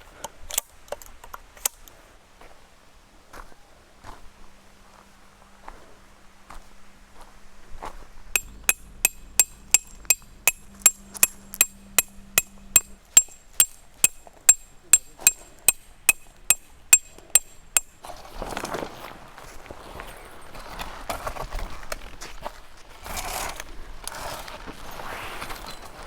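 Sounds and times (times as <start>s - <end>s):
hammer striking metal tent peg: 8.4s - 18.0s.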